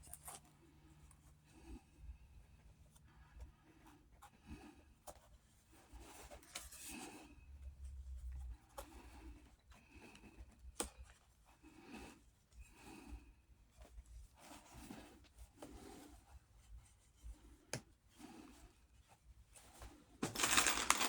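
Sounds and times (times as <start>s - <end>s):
rubbing and scraping leather: 13.8s - 17.6s.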